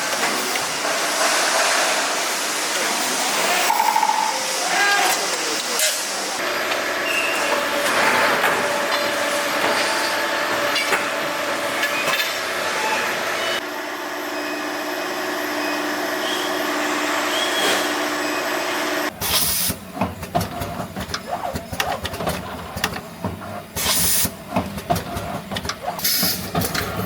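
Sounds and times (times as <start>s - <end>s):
machinery hiss and hum: 0.0s - 6.6s.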